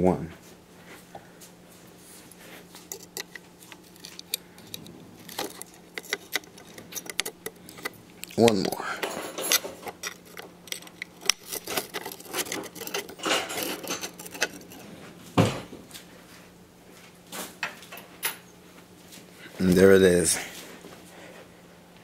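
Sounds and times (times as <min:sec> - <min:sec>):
small hard parts clicking and clattering: 0:02.8 - 0:14.9.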